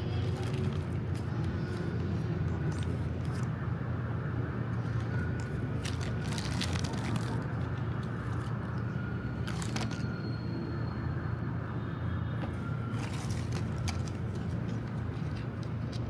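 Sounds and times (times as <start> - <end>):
steady low rumble: 0.0 - 11.2
packaging crinkling and rustling: 0.2 - 3.6, 4.7 - 10.1, 12.5 - 15.9.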